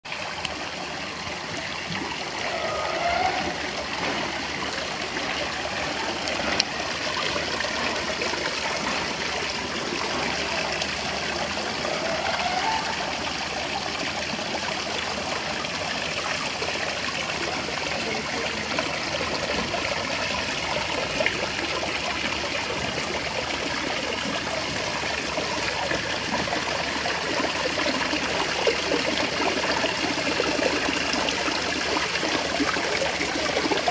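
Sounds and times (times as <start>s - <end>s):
water splashing over rocks: 0.0s - 33.9s.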